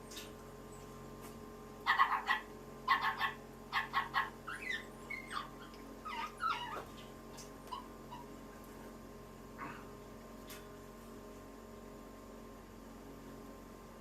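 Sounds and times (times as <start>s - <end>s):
electrical hum: 0.0s - 14.0s
animal yelps: 1.8s - 8.4s
animal whining calls: 1.9s - 8.4s.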